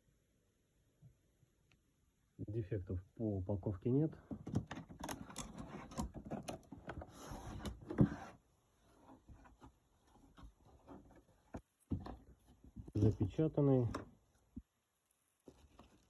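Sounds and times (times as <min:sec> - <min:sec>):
cardboard box taps and scrapes: 0:05.5 - 0:13.1.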